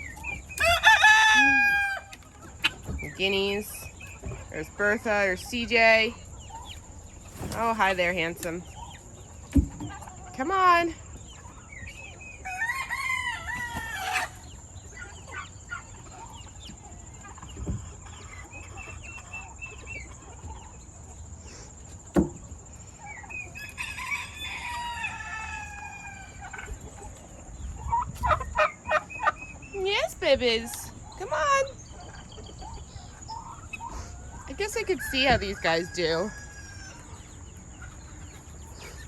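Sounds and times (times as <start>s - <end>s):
chickens clucking: 0.0s - 39.0s
rooster crowing: 0.5s - 2.2s, 12.4s - 14.3s, 23.8s - 26.4s.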